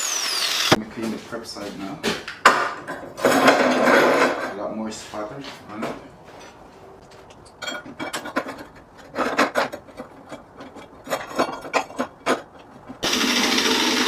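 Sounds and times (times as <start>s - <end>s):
power wire wheel running: 0.0s - 0.8s, 13.0s - 14.0s.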